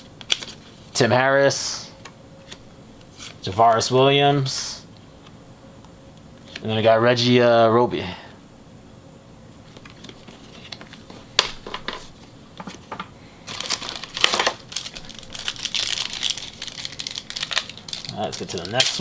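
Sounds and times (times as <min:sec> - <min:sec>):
wrapper crinkling: 0:13.4 - 0:19.0
cards clicking: 0:14.2 - 0:19.0.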